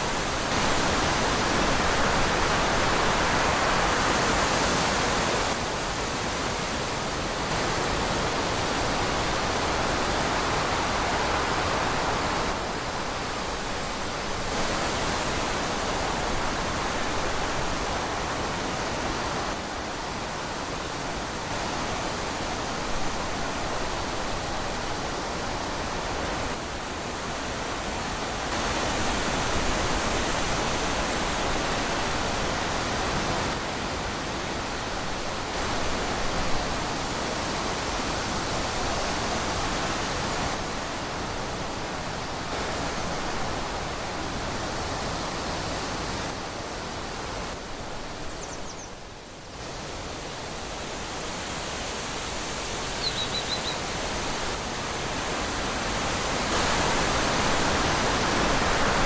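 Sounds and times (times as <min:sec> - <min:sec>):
wind blowing through trees: 0:00.0 - 0:59.0.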